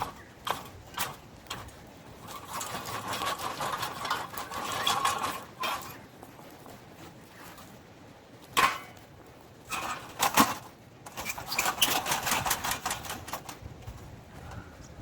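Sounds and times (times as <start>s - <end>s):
campfire crackling and popping: 0.0s - 11.6s.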